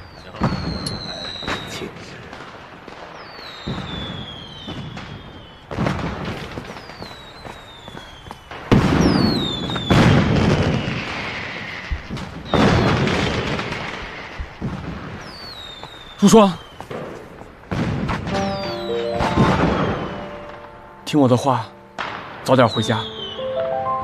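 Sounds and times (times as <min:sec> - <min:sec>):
fireworks bursting and crackling: 0:00.0 - 0:23.5
whistling shells falling in pitch: 0:18.3 - 0:21.2, 0:22.6 - 0:23.6.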